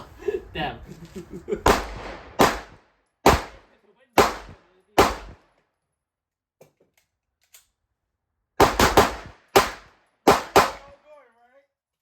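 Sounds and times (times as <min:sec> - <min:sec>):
handgun shots: 0:01.7 - 0:03.6, 0:04.2 - 0:05.4, 0:08.6 - 0:10.9.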